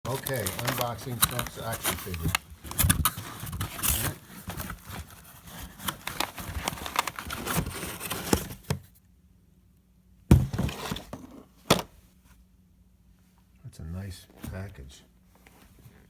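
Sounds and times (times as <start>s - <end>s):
packaging crinkling and rustling: 0.1s - 8.9s
box knocking: 10.3s - 11.0s.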